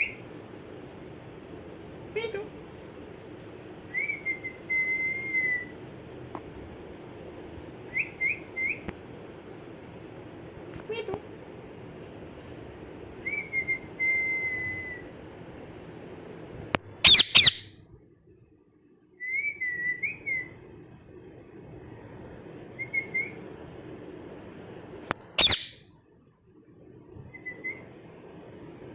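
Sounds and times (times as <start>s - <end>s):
parrot sharp screeches: 17.0s - 17.7s, 25.4s - 25.8s
parrot soft chirps: 17.0s - 17.7s, 25.4s - 25.8s.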